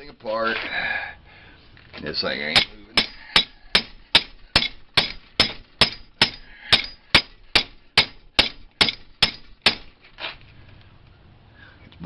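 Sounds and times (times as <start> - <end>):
hammer striking metal: 2.5 - 9.9.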